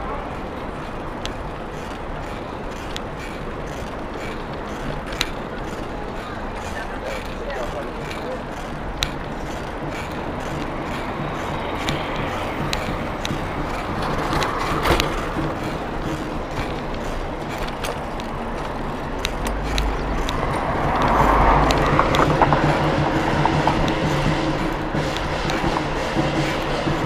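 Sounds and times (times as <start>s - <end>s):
busy street noise: 0.0s - 27.0s
music: 23.8s - 27.0s.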